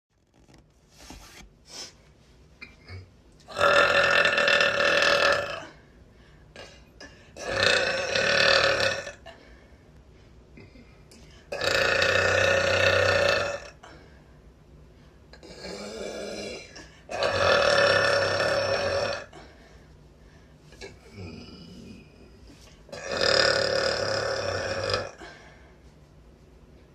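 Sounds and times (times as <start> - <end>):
woman burping loudly: 2.8 - 5.8, 7.4 - 9.4, 11.5 - 13.8, 15.4 - 19.4, 22.9 - 25.2.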